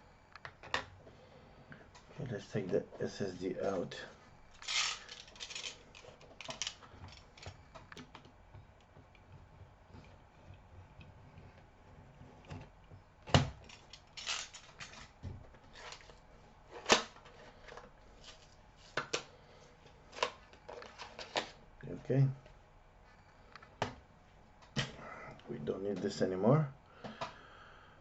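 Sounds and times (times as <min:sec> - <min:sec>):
small parts clicking and rattling: 0:04.5 - 0:08.4, 0:13.6 - 0:15.2.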